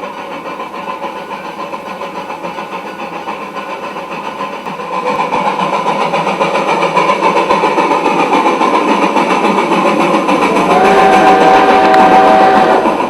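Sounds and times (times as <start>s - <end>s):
engine running with regular pulse: 0.0s - 13.0s.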